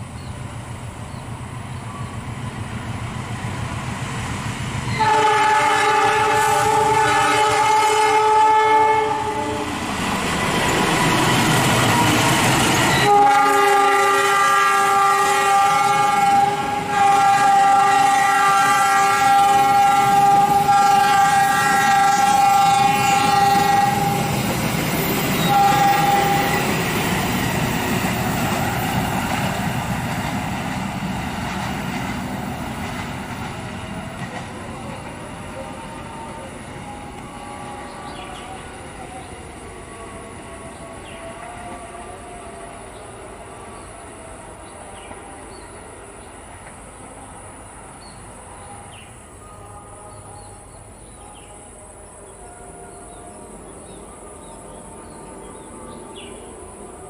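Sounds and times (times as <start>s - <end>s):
train rumbling past: 0.0s - 57.0s
train horn blasts: 4.9s - 9.9s, 11.0s - 29.0s, 34.2s - 46.3s, 48.4s - 57.0s.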